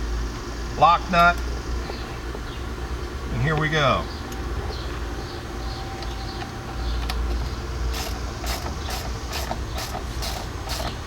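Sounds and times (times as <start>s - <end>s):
ratchet wrench clicking: 7.9s - 11.0s.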